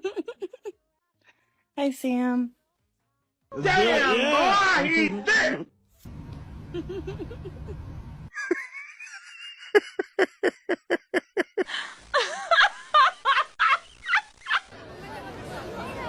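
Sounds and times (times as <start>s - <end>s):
rapid rhythmic laughter: 6.7s - 14.7s.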